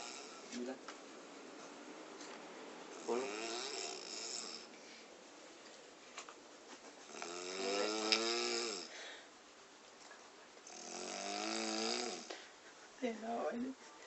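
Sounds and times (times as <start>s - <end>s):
person snoring: 0.0s - 0.5s, 3.0s - 4.7s, 7.1s - 9.0s, 10.7s - 12.4s
quiet breath: 4.7s - 5.3s, 8.8s - 10.5s, 12.2s - 13.1s.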